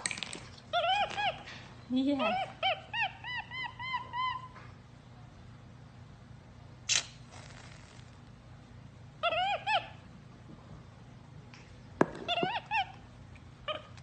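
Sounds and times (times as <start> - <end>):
sharp click: 6.9 - 7.2
cat chirping: 12.2 - 13.0.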